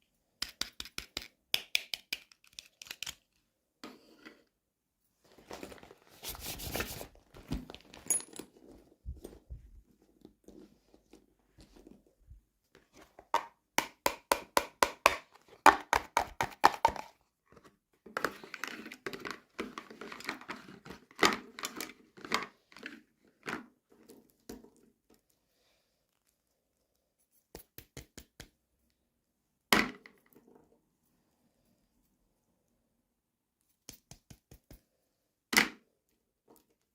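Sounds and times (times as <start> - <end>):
clicks and taps of small pieces: 0.4 - 3.4, 27.5 - 28.6, 33.8 - 34.9.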